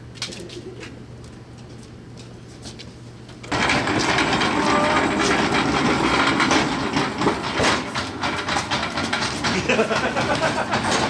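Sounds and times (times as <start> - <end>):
loud machine rushing noise: 3.5 - 11.0.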